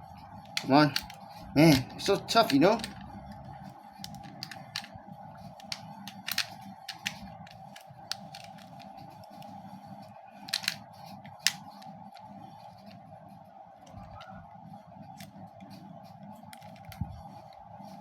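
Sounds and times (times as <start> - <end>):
steady hum: 0.0 - 18.0
plastic clicks and knocks: 5.6 - 8.9, 10.5 - 11.7.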